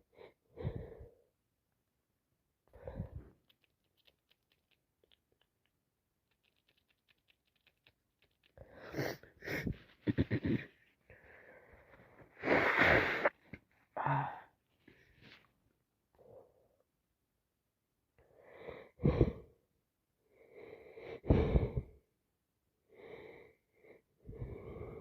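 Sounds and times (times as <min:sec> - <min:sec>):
wheezy gasping breaths: 0:08.5 - 0:10.0, 0:20.4 - 0:22.0, 0:23.0 - 0:25.0.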